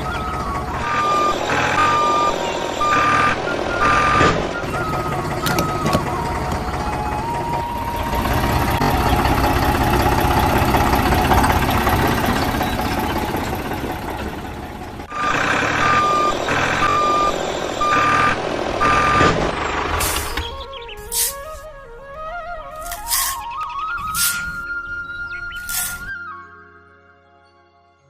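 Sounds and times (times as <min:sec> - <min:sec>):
reversing alarm beeping: 0:00.0 - 0:08.8, 0:15.1 - 0:19.4
truck engine rumbling: 0:00.0 - 0:26.5.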